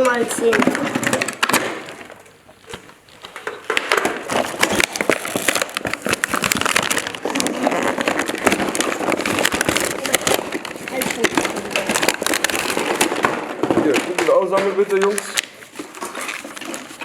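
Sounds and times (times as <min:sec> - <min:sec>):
plastic packaging crackling: 0:00.0 - 0:17.0
toy balls clicking: 0:03.4 - 0:13.4.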